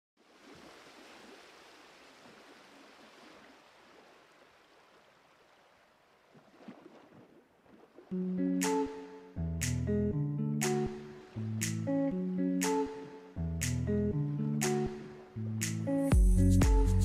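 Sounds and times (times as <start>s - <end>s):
plucked guitar music: 8.1s - 17.0s.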